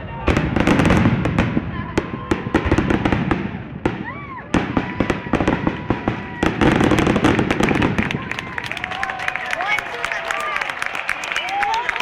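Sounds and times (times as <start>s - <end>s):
fireworks crackling and popping: 0.2s - 9.4s.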